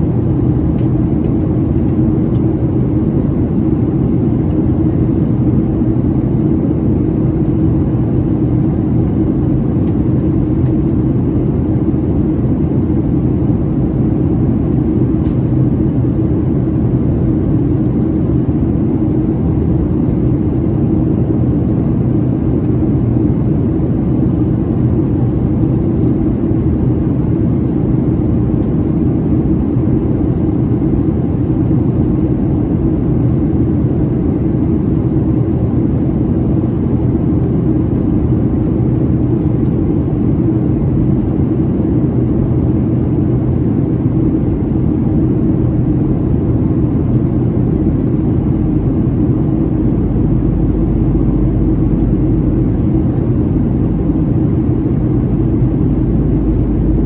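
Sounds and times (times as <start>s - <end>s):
aircraft cabin roar: 0.0s - 57.0s
deep low rumble: 43.4s - 57.0s.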